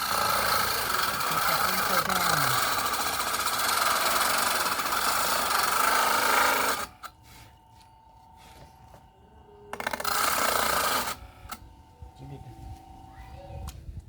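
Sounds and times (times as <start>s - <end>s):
power tool cutting wood: 0.0s - 7.1s, 9.7s - 11.2s
faint steady hum: 2.4s - 14.0s.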